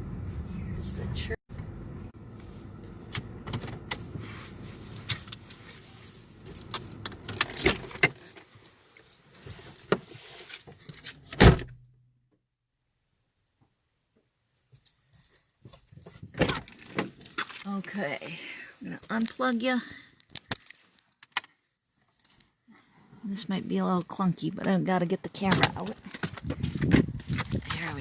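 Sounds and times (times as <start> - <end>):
handling clicks and rattles: 6.4 - 11.3, 25.4 - 28.0.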